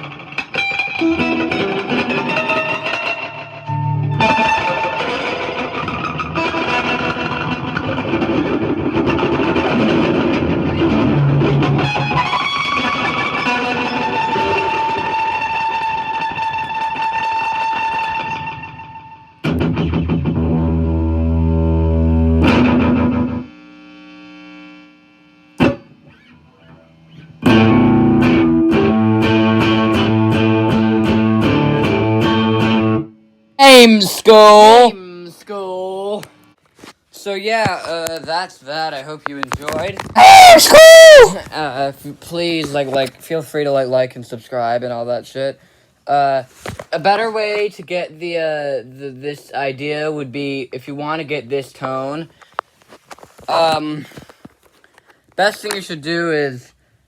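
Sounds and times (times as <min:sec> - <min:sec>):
distorted electric guitar with delay: 0:00.0 - 0:33.1.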